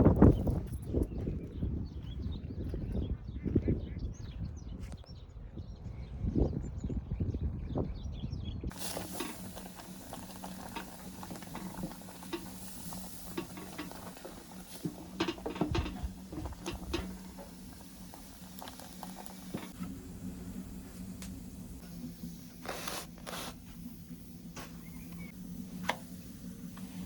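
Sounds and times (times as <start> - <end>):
food simmering in a pot: 8.7 - 27.0
steady low hum: 8.7 - 27.0
utensil stirring and scraping: 8.7 - 27.0.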